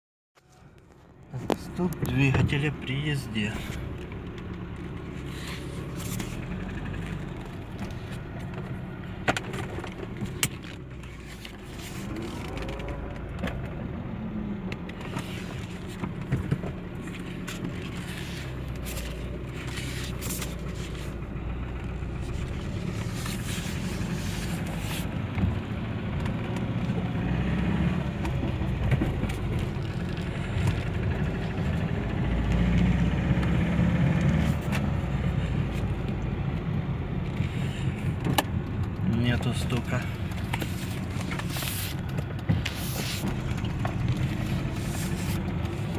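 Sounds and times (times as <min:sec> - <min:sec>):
car engine and road noise: 0:00.4 - 0:45.9.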